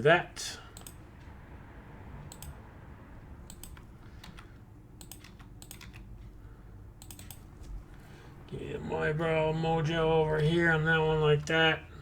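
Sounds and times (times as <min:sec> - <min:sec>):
keyboard keystrokes: 0:03.5 - 0:06.1, 0:07.0 - 0:07.4.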